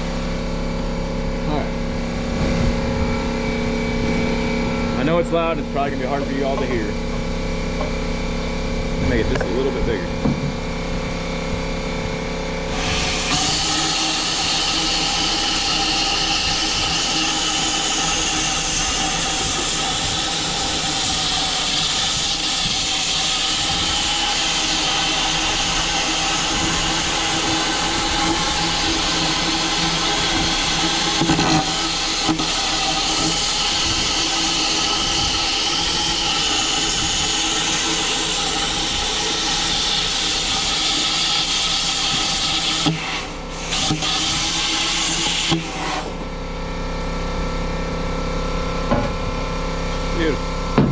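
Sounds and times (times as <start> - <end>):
machine hum: 0.0 - 50.9
grinding tool hiss: 12.3 - 46.3.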